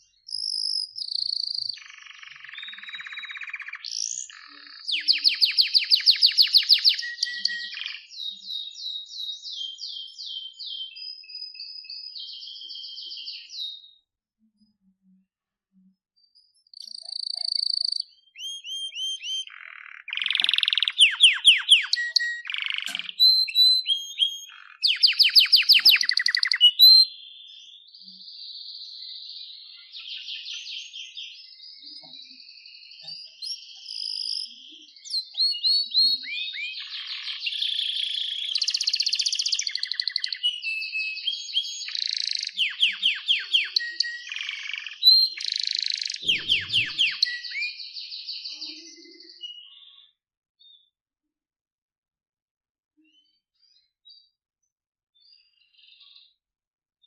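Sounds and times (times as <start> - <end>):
canary singing: 0.0 - 14.0, 16.3 - 27.7, 33.2 - 47.9.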